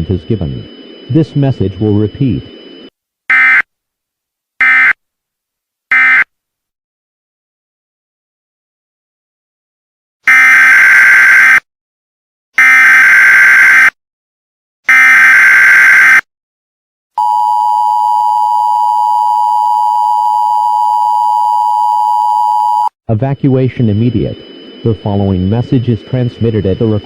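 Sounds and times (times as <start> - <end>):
buzzing data bursts: 23.3 - 27.0.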